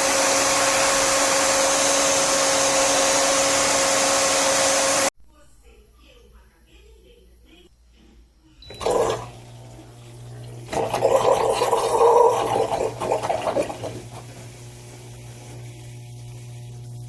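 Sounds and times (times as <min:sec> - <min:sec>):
washing machine electric hum: 0:00.0 - 0:05.1, 0:07.8 - 0:17.0
water rushing in washing machine: 0:00.0 - 0:05.1, 0:08.7 - 0:17.0.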